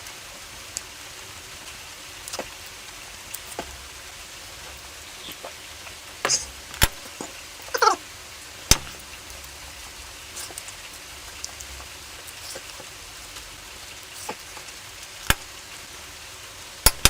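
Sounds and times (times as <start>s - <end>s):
chewing and mouth clicks: 10.3s - 12.9s.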